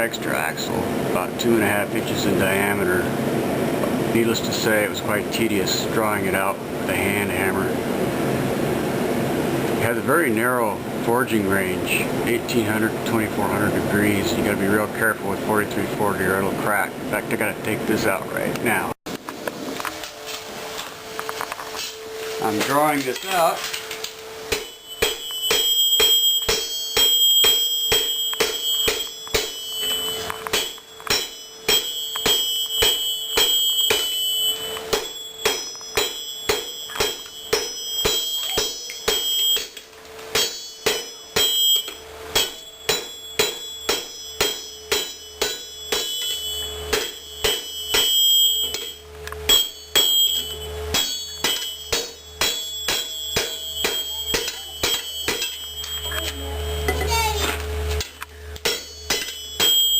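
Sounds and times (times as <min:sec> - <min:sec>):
hammer striking metal on anvil: 0:24.5 - 0:57.1, 0:58.0 - 0:59.9
anvil ringing: 0:24.5 - 0:57.4, 0:58.0 - 0:59.9.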